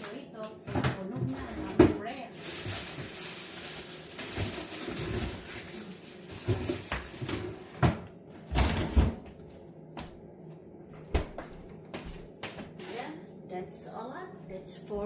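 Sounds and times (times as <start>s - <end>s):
grocery bags rustling: 0.0s - 7.8s.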